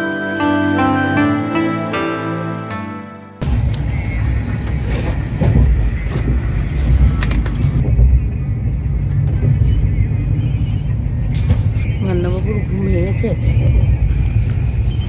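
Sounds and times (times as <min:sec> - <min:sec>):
train rumble inside coach: 0:03.4 - 0:15.0.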